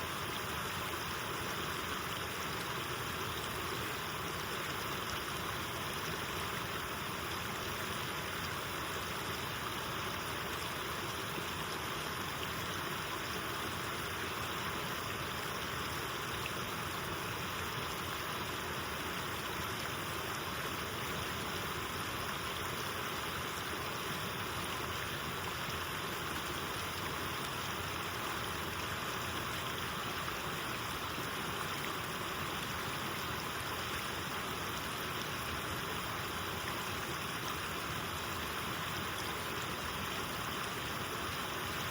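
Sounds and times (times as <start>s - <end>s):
river water rushing: 0.0s - 41.9s.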